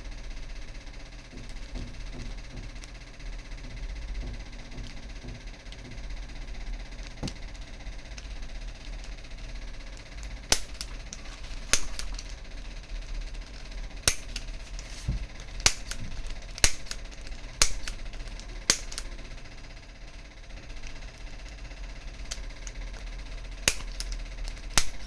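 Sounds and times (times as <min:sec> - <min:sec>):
spring-loaded adjuster snapping clicks: 0:10.4 - 0:12.4, 0:14.0 - 0:14.9, 0:15.6 - 0:19.1, 0:23.6 - 0:25.0.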